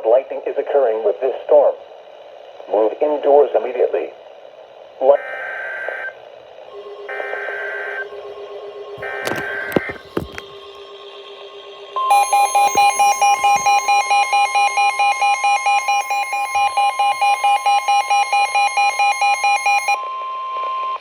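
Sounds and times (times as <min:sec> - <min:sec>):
steady alarm tone: 0:12.0 - 0:20.5.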